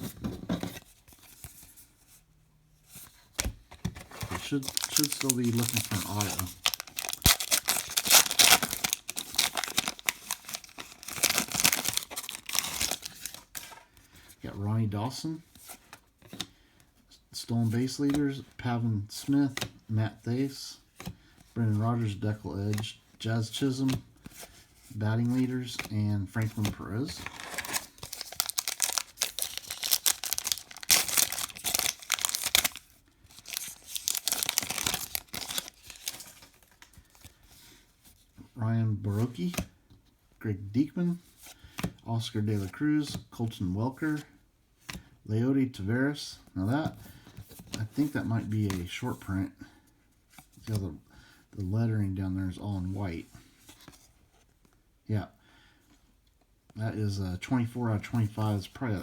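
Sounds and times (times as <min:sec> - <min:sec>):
wrapper tearing and crinkling: 0:04.5 - 0:13.6, 0:27.2 - 0:36.8.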